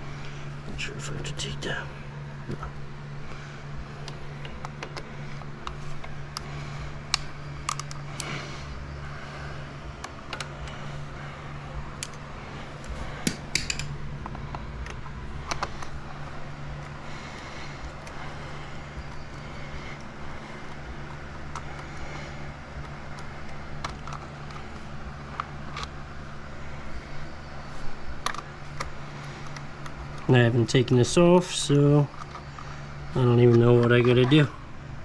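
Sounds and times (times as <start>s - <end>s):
steady low hum: 0.0s - 35.0s
hand tools clicking on metal parts: 13.2s - 13.9s.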